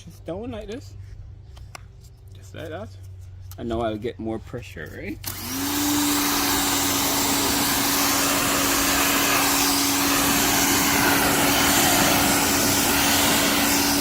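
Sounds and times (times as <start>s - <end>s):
pressure washer motor humming: 5.2s - 14.0s
water jet hissing: 5.7s - 14.0s.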